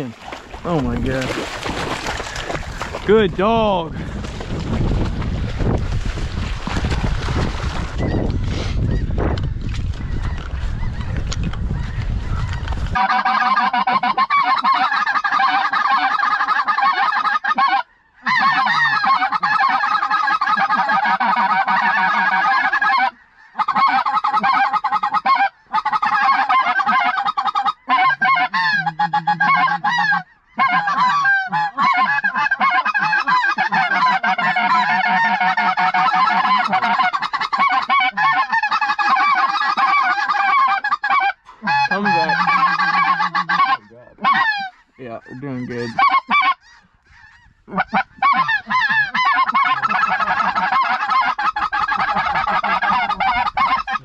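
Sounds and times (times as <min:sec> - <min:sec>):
geese honking: 0:11.8 - 0:54.0.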